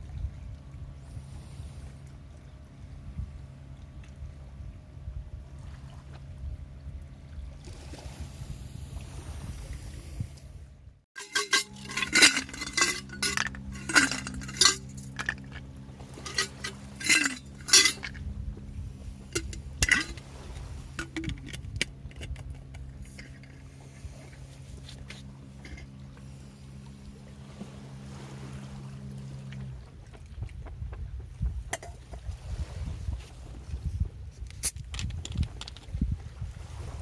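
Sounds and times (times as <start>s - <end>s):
faint steady hum: 0.0s - 37.0s
cookware clinking and tapping: 11.2s - 15.4s, 16.2s - 18.2s, 19.3s - 20.2s.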